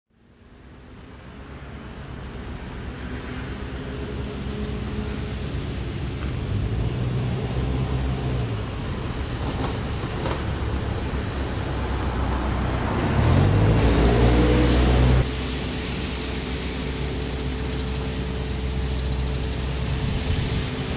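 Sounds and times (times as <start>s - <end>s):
car engine revving: 4.9s - 15.3s.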